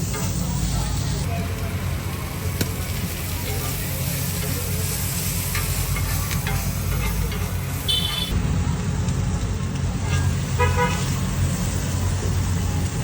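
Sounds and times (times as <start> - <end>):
food sizzling in a pan: 0.0 - 8.4.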